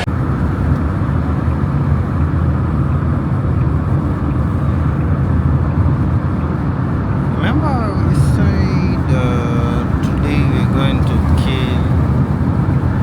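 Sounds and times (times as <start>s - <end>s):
low vehicle rumble: 0.0s - 13.0s.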